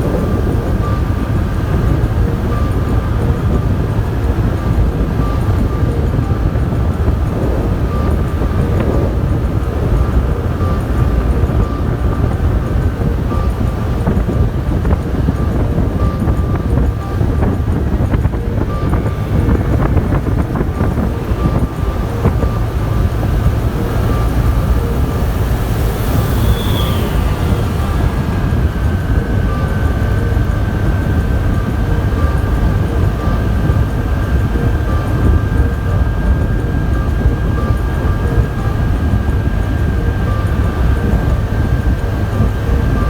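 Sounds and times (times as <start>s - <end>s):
vehicle road noise rumble: 0.0s - 43.0s
faint high tone: 18.4s - 30.3s.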